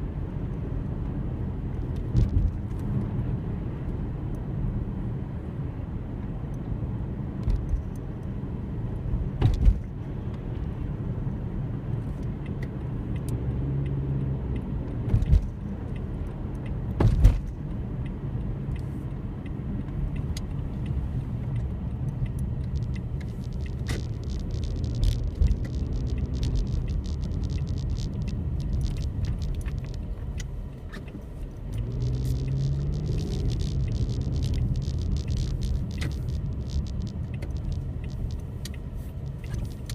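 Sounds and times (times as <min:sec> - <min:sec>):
low rumble of car in motion: 0:00.0 - 0:39.9
faint crackling: 0:22.7 - 0:30.1, 0:31.8 - 0:39.9.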